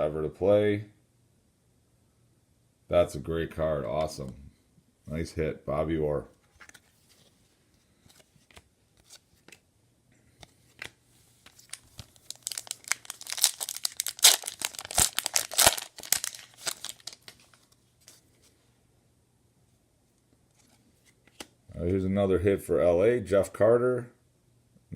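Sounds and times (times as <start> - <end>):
wrapper tearing and crinkling: 11.4 - 17.7.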